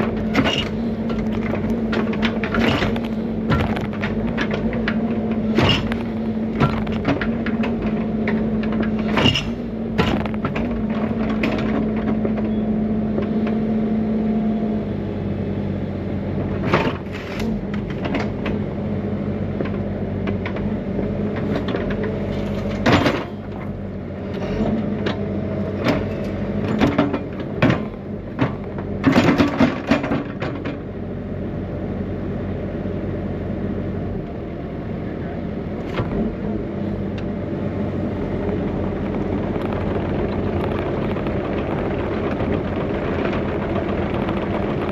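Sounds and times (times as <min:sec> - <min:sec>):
excavator diesel engine running: 0:00.0 - 0:44.9
metallic clanks and knocks: 0:00.3 - 0:12.5.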